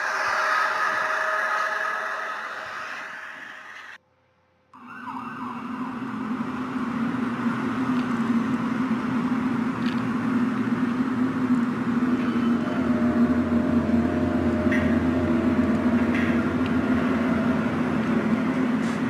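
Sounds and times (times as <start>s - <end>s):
rushing noise: 0.0s - 4.0s
drone of steady pitches: 0.0s - 18.8s
low hum: 0.0s - 19.0s.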